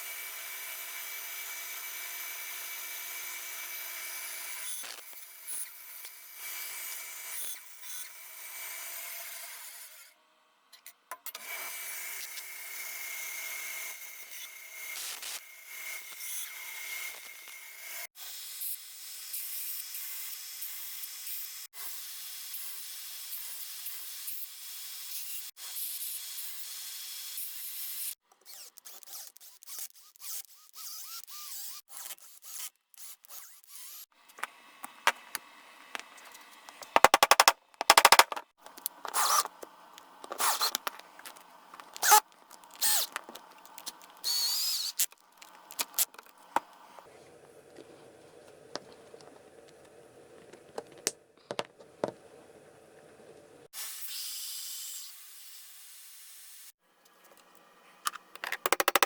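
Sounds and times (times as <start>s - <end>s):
small power tool motor running: 42.8s - 43.2s.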